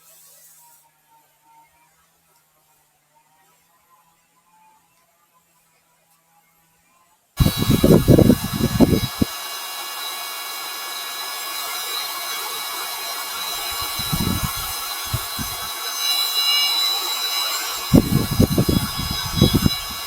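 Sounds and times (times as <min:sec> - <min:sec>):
insect chorus buzzing: 0:07.4 - 0:20.0.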